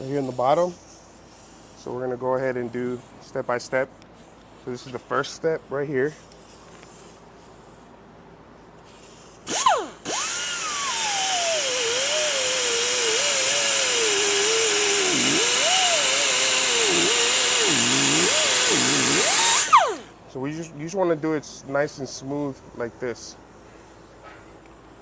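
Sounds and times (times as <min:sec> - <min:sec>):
power grinder grinding rubber: 0:09.5 - 0:20.2.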